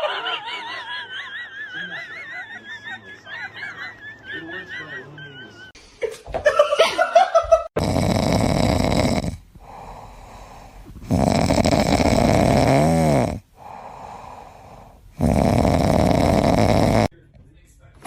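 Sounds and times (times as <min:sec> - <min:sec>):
pet snoring loudly: 0:07.8 - 0:17.1
quiet breaths: 0:08.1 - 0:17.2.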